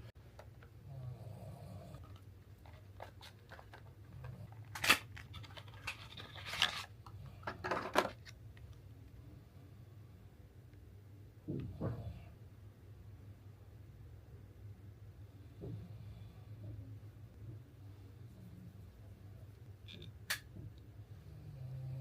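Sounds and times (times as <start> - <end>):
packaging rustling: 2.0 - 8.4.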